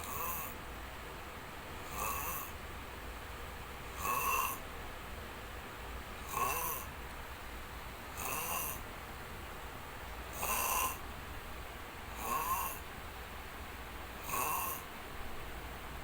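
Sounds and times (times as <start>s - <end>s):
person snoring: 0.0s - 0.6s, 1.9s - 2.5s, 3.9s - 4.6s, 6.2s - 6.9s, 8.2s - 8.8s, 10.4s - 11.0s, 12.2s - 12.8s, 14.2s - 14.8s.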